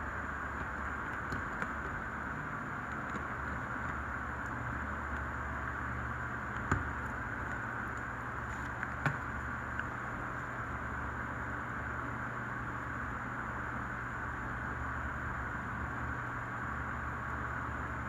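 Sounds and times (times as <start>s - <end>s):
fan running: 0.0s - 18.0s.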